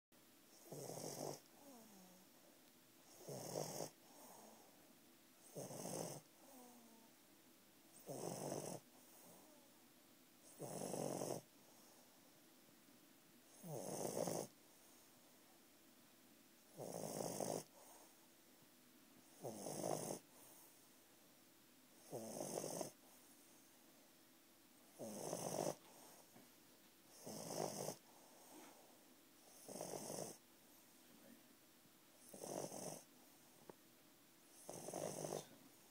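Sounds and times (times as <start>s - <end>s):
puppy snoring: 0.5s - 4.8s, 5.4s - 7.1s, 7.9s - 9.7s, 10.4s - 12.1s, 13.5s - 15.1s, 16.7s - 18.2s, 19.2s - 20.8s, 21.9s - 23.6s, 24.9s - 26.4s, 27.1s - 30.4s, 32.2s - 33.1s, 34.5s - 35.9s
soft breathing: 3.9s - 5.0s, 11.4s - 12.4s, 17.6s - 18.4s, 20.2s - 21.0s, 25.6s - 26.6s, 27.9s - 29.6s.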